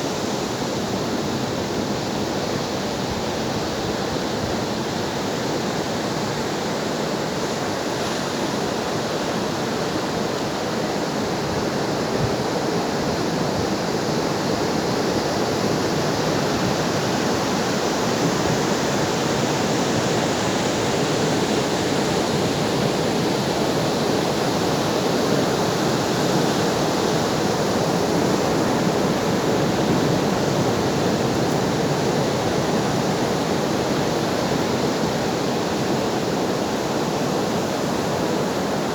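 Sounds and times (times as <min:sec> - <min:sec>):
ocean waves breaking: 0:20.4 - 0:38.9.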